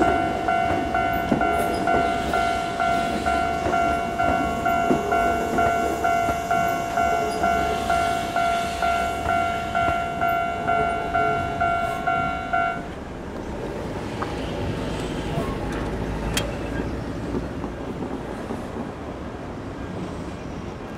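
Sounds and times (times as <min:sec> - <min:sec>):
level crossing bell ringing: 0:00.0 - 0:12.9.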